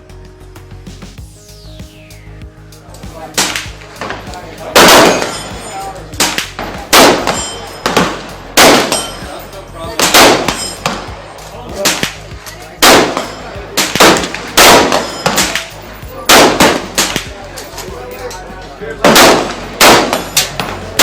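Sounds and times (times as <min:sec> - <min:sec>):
gunshots with echo: 0:03.4 - 0:09.4, 0:10.0 - 0:11.2, 0:11.8 - 0:15.7, 0:16.3 - 0:17.4, 0:19.0 - 0:21.0.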